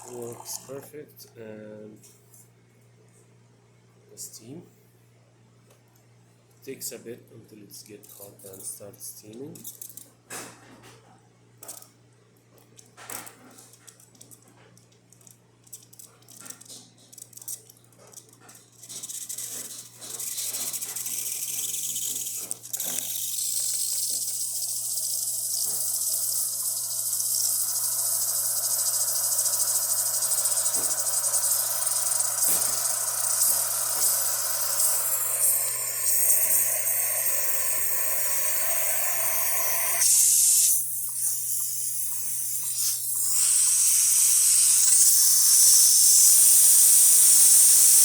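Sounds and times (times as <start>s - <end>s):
steam hissing: 0.0s - 0.8s, 19.3s - 48.0s
steam wand crackling and spitting: 18.9s - 48.0s.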